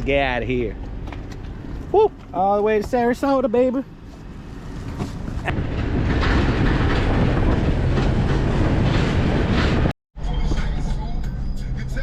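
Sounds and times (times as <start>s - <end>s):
trailer knocks: 4.9s - 9.9s.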